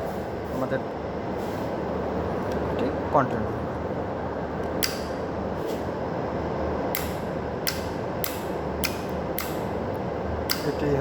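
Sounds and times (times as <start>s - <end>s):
electrical hum of motor panel: 0.0s - 11.0s
sharp switch clicks: 4.6s - 5.2s, 6.9s - 9.7s, 10.4s - 10.9s.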